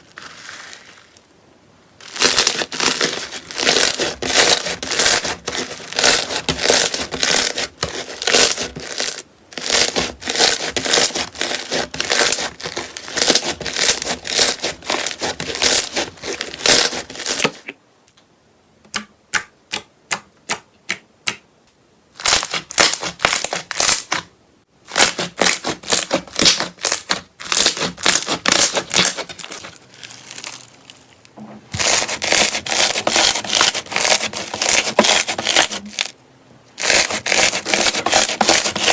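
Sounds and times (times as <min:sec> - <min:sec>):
slime crackling and popping: 0:02.0 - 0:17.5, 0:22.2 - 0:24.2, 0:24.9 - 0:31.1.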